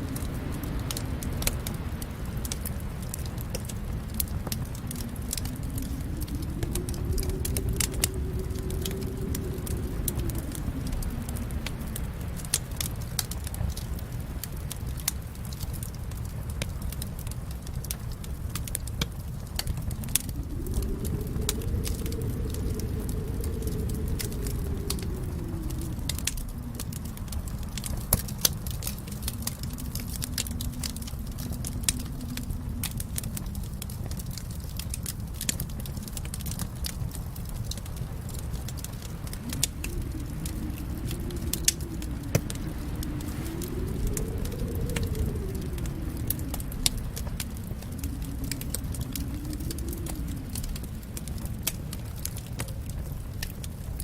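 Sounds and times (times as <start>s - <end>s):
low rumble of flames: 0.0s - 54.0s
wood fire crackling and popping: 0.0s - 54.0s.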